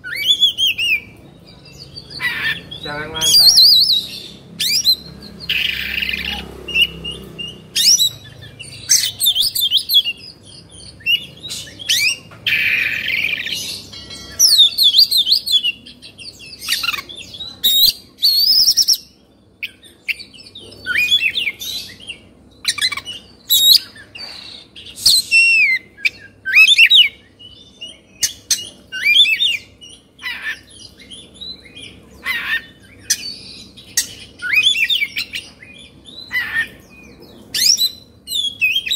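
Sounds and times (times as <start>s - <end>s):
bird singing whistles: 3.2s - 10.3s, 17.6s - 19.0s, 24.9s - 27.2s, 34.0s - 36.7s, 37.5s - 38.9s.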